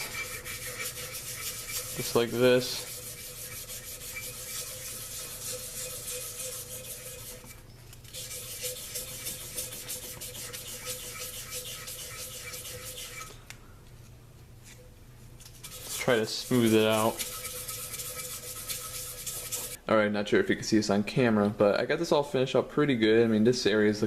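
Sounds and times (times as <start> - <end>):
sandpaper scratching on metal: 0.0 - 13.3, 15.6 - 19.8.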